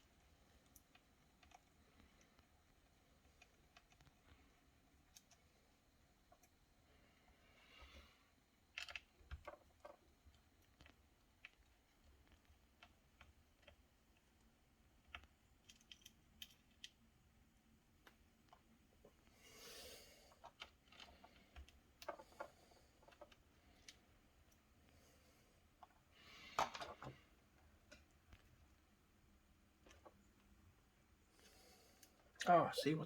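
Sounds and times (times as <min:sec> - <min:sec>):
plastic laptop parts clicking: 0:15.0 - 0:17.0.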